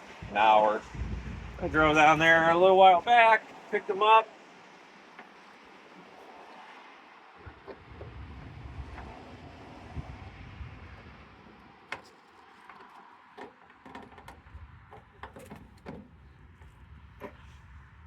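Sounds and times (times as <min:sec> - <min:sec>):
wind rumble on microphone: 0:00.0 - 0:03.7, 0:05.7 - 0:12.0, 0:14.0 - 0:18.0.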